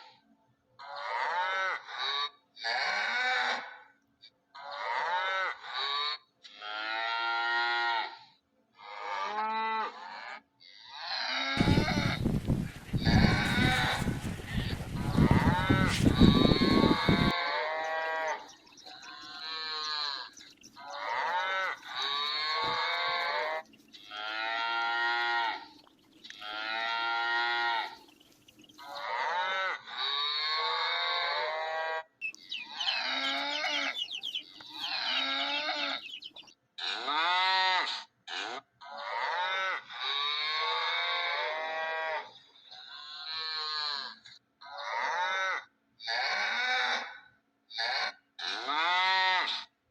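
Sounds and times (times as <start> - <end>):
cattle mooing: 11.0 - 12.2, 13.0 - 28.1, 28.7 - 37.8.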